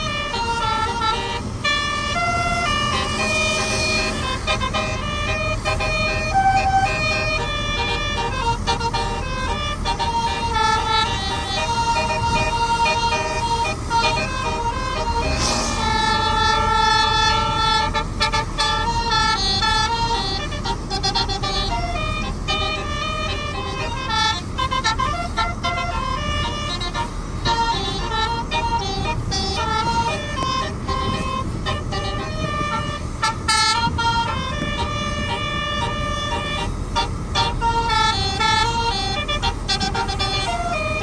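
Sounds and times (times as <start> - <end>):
bus air horn melody: 0.0 - 41.0.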